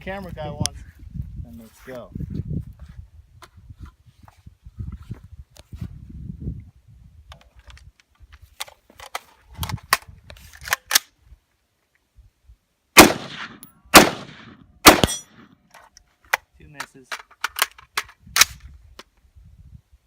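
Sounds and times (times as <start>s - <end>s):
rifle shots echoing: 13.0s - 15.5s
rifle handling clacks: 14.9s - 19.1s.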